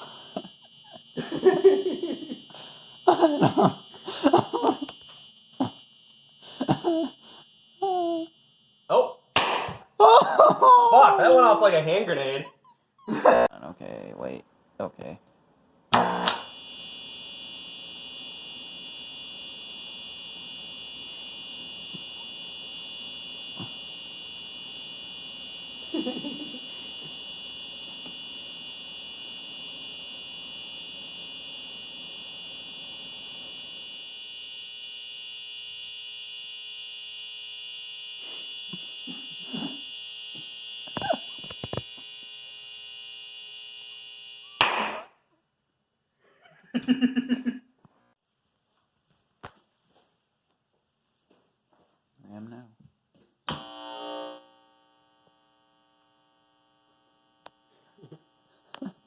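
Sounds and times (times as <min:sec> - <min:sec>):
loud speaker pop: 0:09.4 - 0:09.9, 0:15.9 - 0:16.4, 0:44.6 - 0:45.1.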